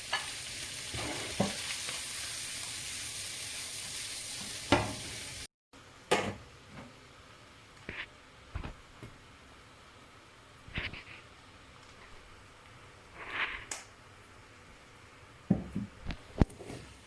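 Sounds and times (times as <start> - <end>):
food sizzling in a wok: 0.0 - 5.5.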